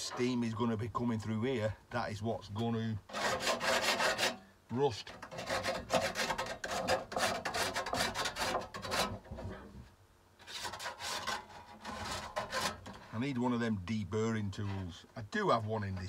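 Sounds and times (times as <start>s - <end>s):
hand file rasping on metal: 3.1s - 4.4s, 5.1s - 9.5s, 10.4s - 13.2s.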